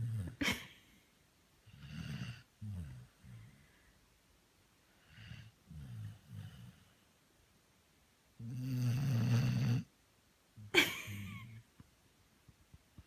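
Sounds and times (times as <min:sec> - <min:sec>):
dog snoring: 0:01.7 - 0:03.4, 0:05.0 - 0:06.9, 0:08.4 - 0:09.9.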